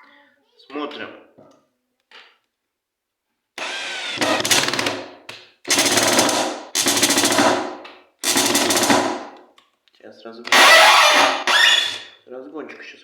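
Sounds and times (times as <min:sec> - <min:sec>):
power drill motor whining: 0:03.6 - 0:04.9, 0:10.5 - 0:12.1
screw hammering into board: 0:03.6 - 0:09.4, 0:10.5 - 0:12.1.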